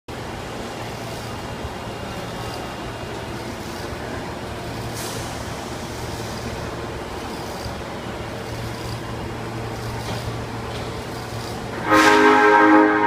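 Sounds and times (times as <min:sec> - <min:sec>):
subway train humming: 0:00.1 - 0:13.0
air hiss: 0:04.8 - 0:07.8.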